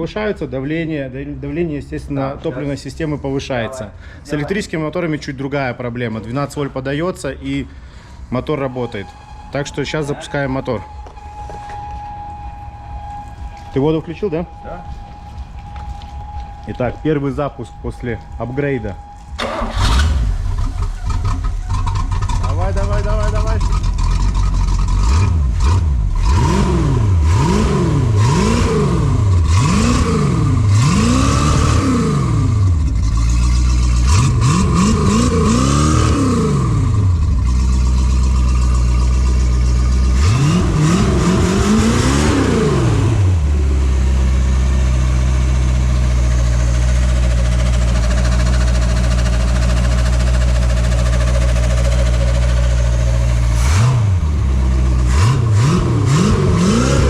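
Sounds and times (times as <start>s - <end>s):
boat engine revving and idling: 19.5s - 57.0s.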